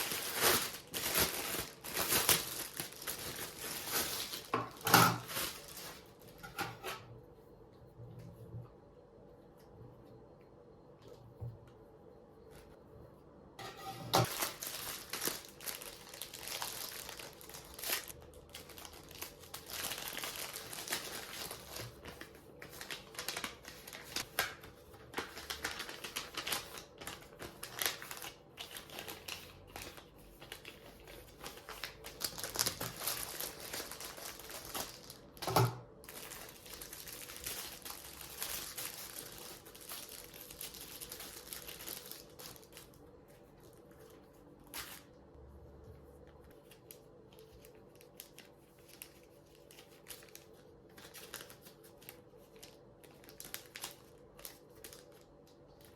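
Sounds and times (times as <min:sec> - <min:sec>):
packaging crinkling and rustling: 0:00.0 - 0:07.0, 0:13.8 - 0:45.4, 0:46.0 - 0:55.9.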